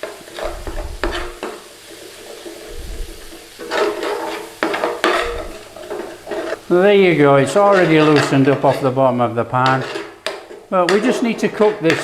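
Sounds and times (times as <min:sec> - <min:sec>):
spice paste sizzling in a pan: 0:00.0 - 0:12.0
spoon stirring and scraping: 0:02.2 - 0:06.8.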